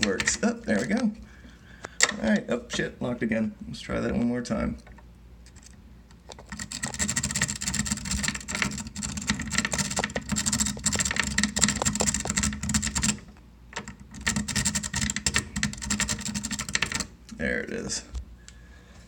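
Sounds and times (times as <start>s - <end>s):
lock pick scratching and clicking: 5.4s - 17.1s.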